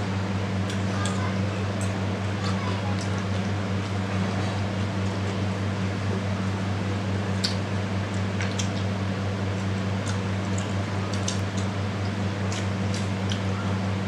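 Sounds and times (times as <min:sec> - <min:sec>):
low electrical hum: 0:00.0 - 0:14.0
wet eating clicks: 0:00.6 - 0:01.2, 0:07.4 - 0:13.7.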